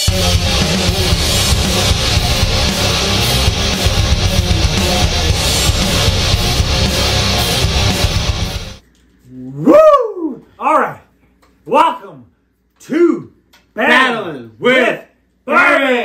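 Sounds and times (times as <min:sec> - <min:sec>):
distorted electric guitar: 0:00.0 - 0:08.8
steady drum beat: 0:00.0 - 0:08.8.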